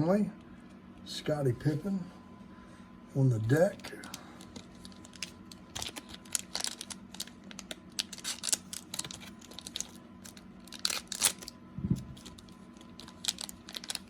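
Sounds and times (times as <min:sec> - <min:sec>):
cellophane wrapper crinkling: 0:03.7 - 0:14.0.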